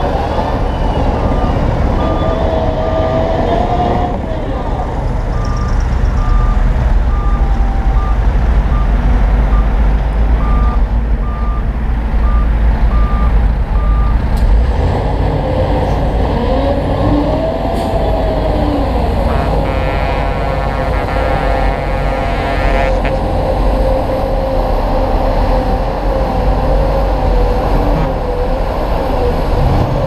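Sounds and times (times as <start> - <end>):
diesel engine deep rumble: 0.0 - 30.0
reversing alarm beeping: 0.3 - 4.1, 5.3 - 14.2.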